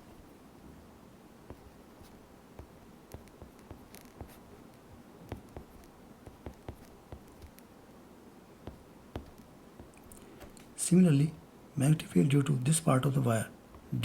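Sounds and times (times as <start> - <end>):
pen tapping and scratching: 1.5 - 7.7, 8.6 - 10.1.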